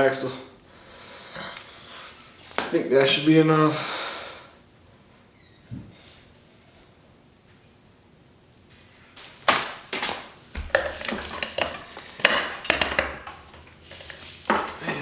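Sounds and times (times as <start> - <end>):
hard parts knocking and clattering: 10.0 - 15.0.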